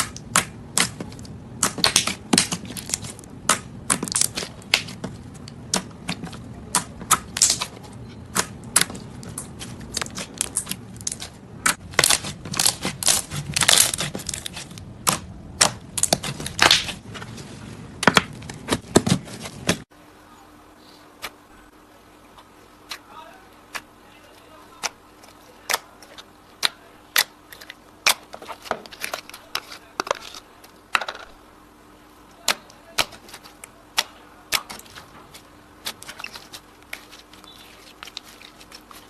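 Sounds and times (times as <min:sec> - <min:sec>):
slime squished by hand: 0:32.4 - 0:39.0.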